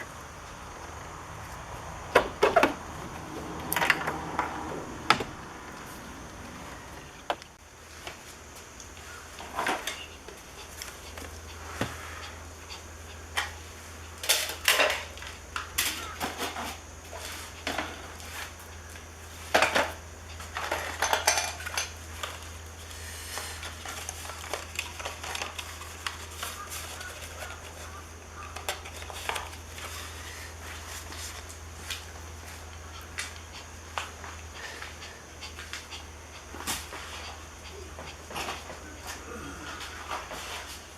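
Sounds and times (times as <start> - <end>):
steady low hum: 0.0 - 40.9
small parts and tools clattering: 9.4 - 11.4, 14.2 - 18.4, 19.4 - 22.5, 23.4 - 30.1.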